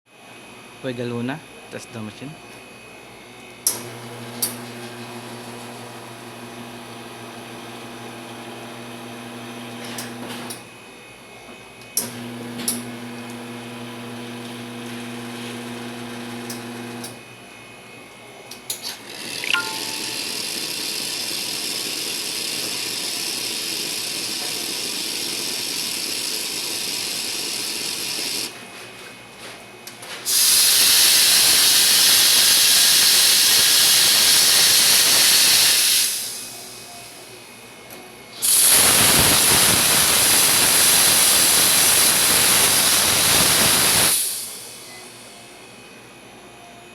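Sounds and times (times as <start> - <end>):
espresso machine humming: 3.7 - 10.6, 12.0 - 17.2, 19.0 - 28.5, 30.3 - 37.5, 38.3 - 45.3
steam hissing: 30.3 - 36.9, 38.4 - 45.3.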